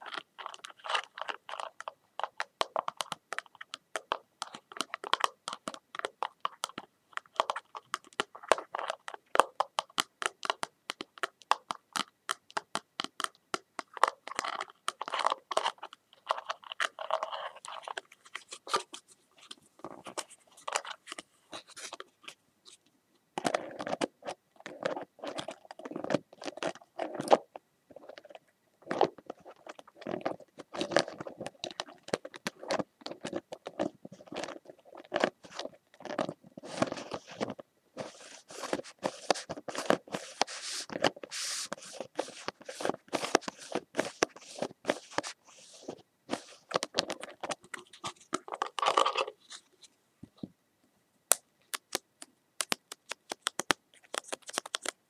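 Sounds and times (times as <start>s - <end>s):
hand scratching and scraping: 13.8s - 50.5s, 52.6s - 55.0s.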